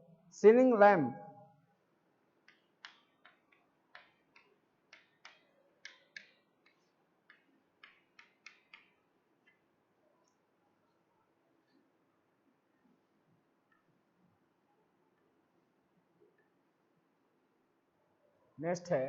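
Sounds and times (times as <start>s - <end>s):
pen tapping while drawing: 2.4s - 9.6s.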